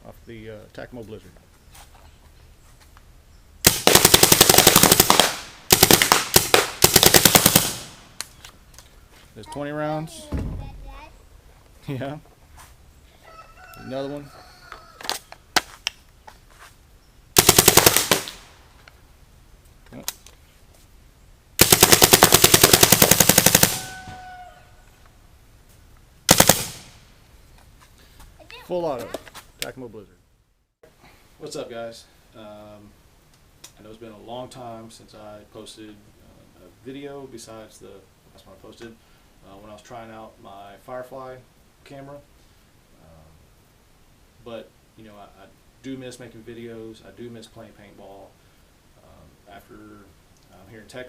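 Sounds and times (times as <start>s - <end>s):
paintball marker firing: 3.7s - 8.3s, 21.6s - 24.1s, 26.3s - 27.0s.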